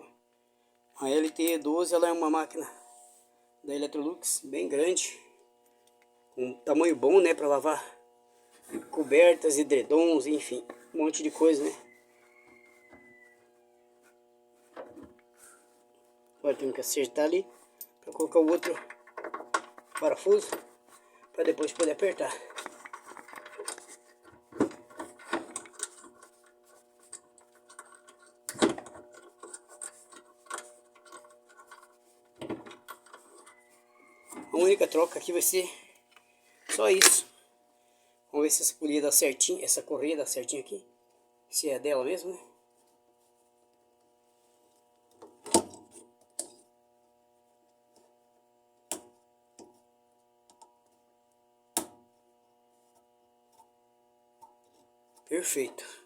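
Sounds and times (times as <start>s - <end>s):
faint steady hum: 0.0s - 56.0s
motor clicks knocks and scraping: 21.6s - 33.5s.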